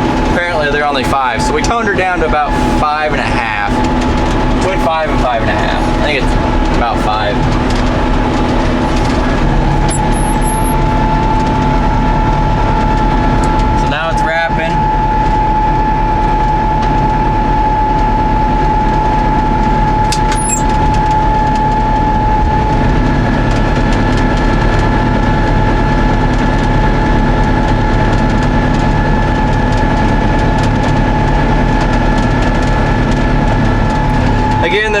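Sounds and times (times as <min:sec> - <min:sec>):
steady high whine: 0:00.0 - 0:35.0
tractor and baler running: 0:00.0 - 0:35.0
sharp click: 0:20.0 - 0:20.7.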